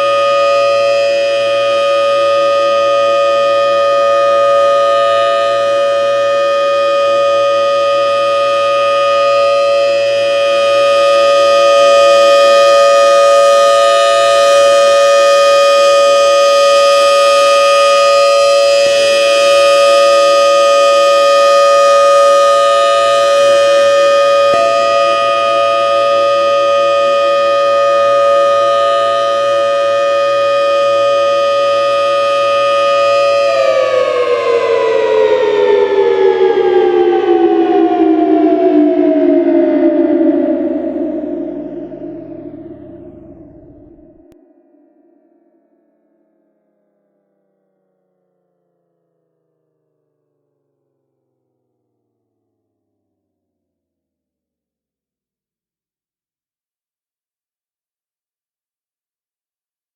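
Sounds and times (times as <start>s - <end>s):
warning siren steady tone: 0.0s - 45.4s.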